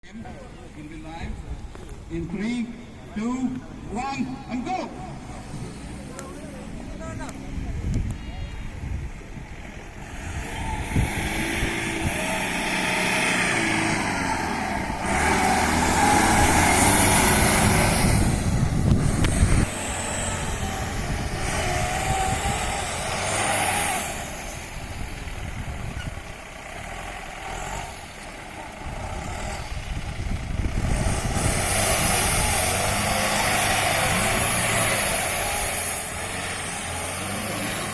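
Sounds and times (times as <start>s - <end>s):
off-road vehicle engine revving: 1.3s - 37.9s.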